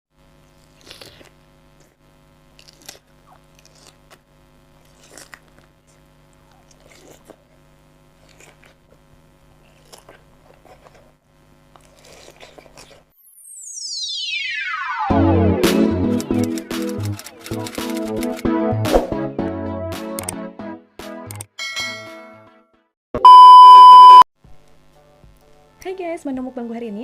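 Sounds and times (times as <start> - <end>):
biting and chewing pineapple: 0.2 - 13.2.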